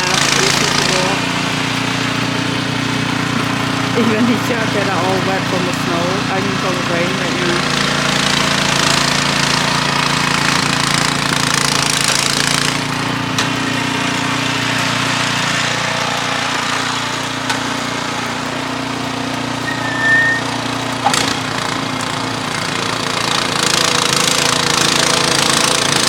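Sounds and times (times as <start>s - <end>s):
snowblower engine running: 0.0s - 26.0s
high squeak: 19.6s - 21.4s.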